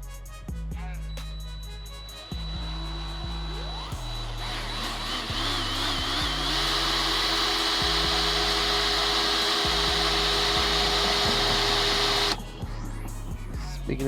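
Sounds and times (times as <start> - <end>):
background music with bass: 0.0 - 14.0
electric drill boring steel: 1.3 - 12.5.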